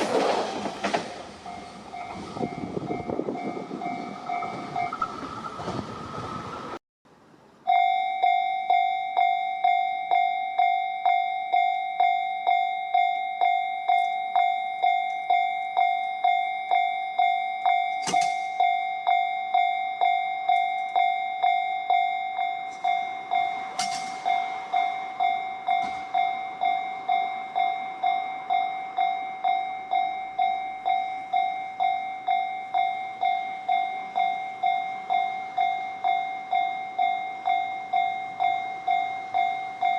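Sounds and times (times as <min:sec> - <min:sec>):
train passing rumble: 0:00.0 - 0:07.7, 0:20.5 - 0:39.9
level crossing warning bell: 0:00.6 - 0:05.6, 0:07.6 - 0:39.9.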